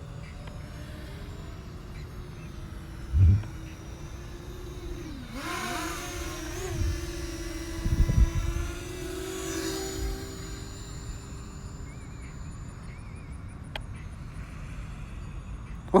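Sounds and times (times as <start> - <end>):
drone propellers whining: 0.0 - 16.0
low thumps: 3.1 - 3.5.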